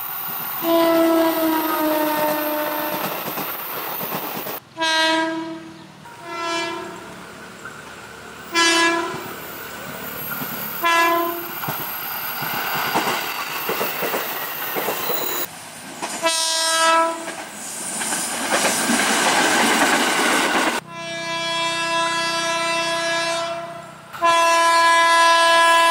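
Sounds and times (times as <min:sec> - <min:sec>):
train rumble and wheel clatter: 0:00.0 - 0:25.9
train horn blasts: 0:00.6 - 0:03.1, 0:04.8 - 0:07.2, 0:08.5 - 0:09.4, 0:10.8 - 0:11.5, 0:16.2 - 0:17.4, 0:20.8 - 0:25.9.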